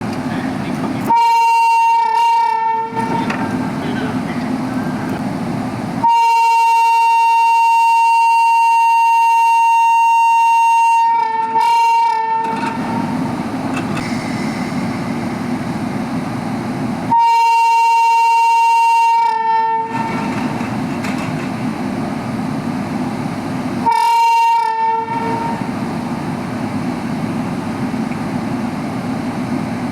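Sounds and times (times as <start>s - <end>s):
train rumble: 0.0s - 29.9s
shrill locomotive horn: 1.1s - 3.3s, 6.0s - 13.2s, 17.1s - 20.3s, 23.8s - 25.7s.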